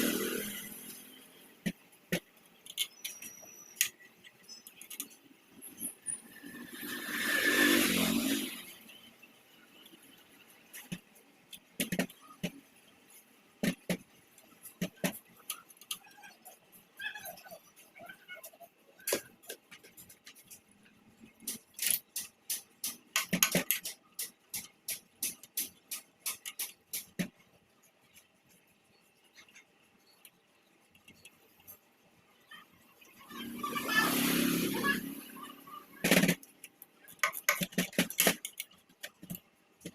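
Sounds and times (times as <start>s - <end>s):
tools and metal parts clicking: 2.1s - 6.9s, 13.7s - 28.3s, 35.8s - 39.9s.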